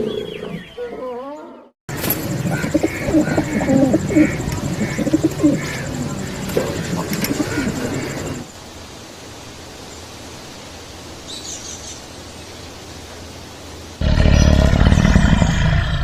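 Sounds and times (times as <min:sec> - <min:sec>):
birds cooing: 0:00.0 - 0:08.4
steady hiss: 0:02.0 - 0:15.8.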